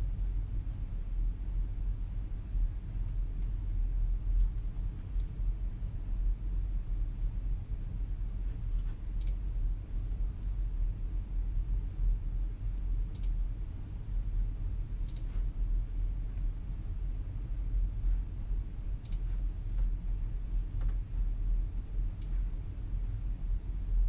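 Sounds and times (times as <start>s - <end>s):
steady low hum: 0.0s - 24.0s
computer mouse clicks: 6.6s - 8.0s, 9.2s - 9.4s, 13.1s - 13.8s, 15.0s - 15.4s, 19.0s - 19.4s, 20.5s - 20.9s.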